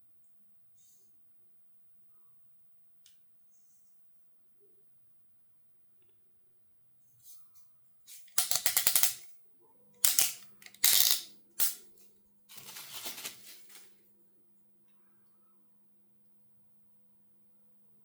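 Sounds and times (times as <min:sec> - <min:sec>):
packaging rattling and rustling: 0:12.5 - 0:13.9.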